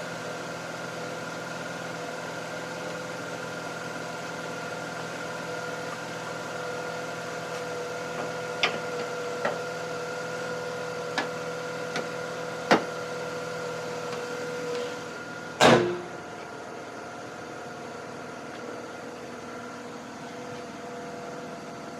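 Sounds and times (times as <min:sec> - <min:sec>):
loud sharp knock: 0:15.6 - 0:16.2.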